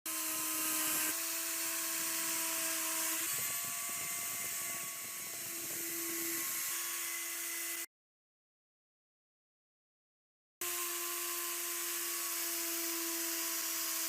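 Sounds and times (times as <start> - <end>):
power tool grinding: 0.1 - 7.9, 10.6 - 14.0.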